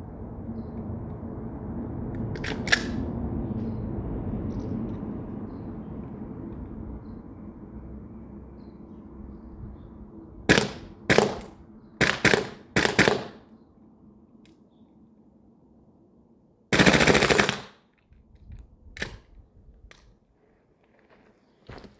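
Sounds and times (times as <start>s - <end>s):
airsoft gun shots: 10.5s - 13.4s.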